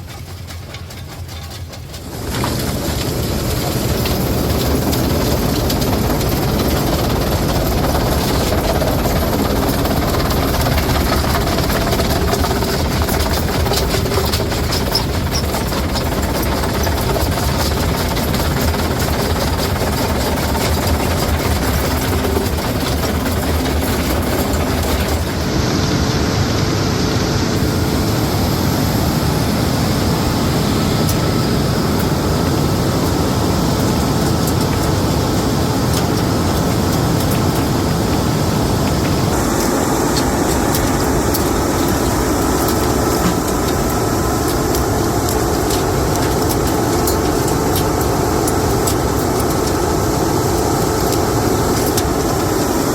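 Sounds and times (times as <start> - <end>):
broken concrete clattering: 0.0 - 25.4
jaw crusher machine din: 0.0 - 25.5, 32.0 - 52.9.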